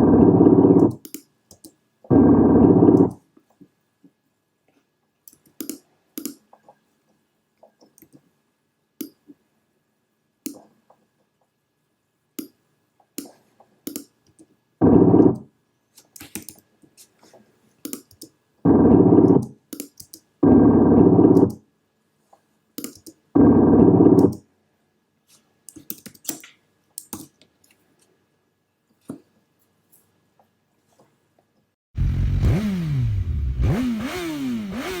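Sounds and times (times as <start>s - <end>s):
buzzy synthesizer tone blasts: 32.0s - 35.0s.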